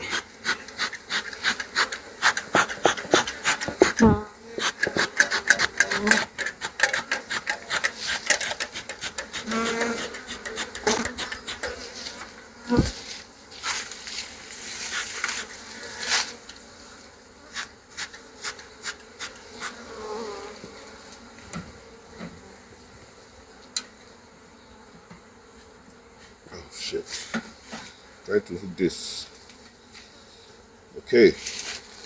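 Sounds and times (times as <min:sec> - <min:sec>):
honeybees buzzing: 0:00.0 - 0:32.0
sharp clicks and knocks: 0:01.2 - 0:11.8.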